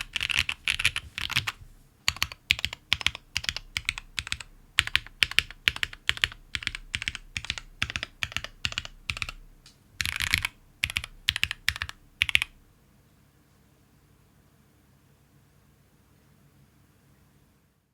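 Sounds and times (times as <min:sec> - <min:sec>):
typing on mechanical keyboard: 0:00.0 - 0:09.4, 0:10.0 - 0:12.6.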